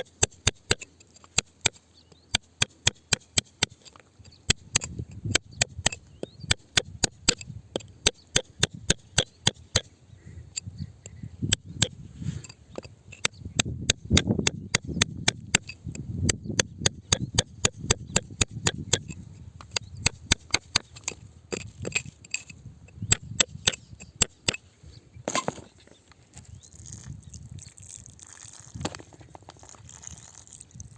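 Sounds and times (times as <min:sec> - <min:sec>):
hand tool striking rock: 0:00.0 - 0:09.9, 0:11.5 - 0:24.6.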